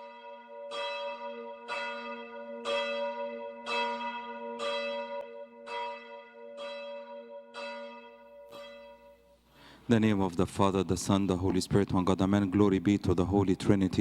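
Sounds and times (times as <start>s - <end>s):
church bell ringing: 0.0s - 9.5s.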